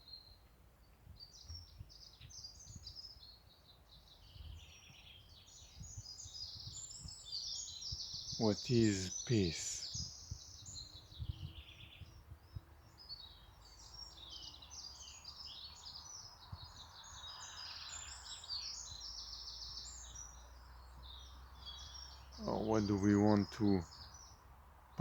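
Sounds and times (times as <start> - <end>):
birds chirping and singing: 4.1 - 20.4, 21.0 - 24.3.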